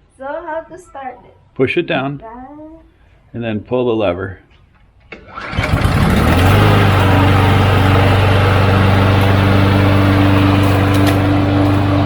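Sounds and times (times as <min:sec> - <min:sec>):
lawn mower engine starting: 0:05.1 - 0:12.0.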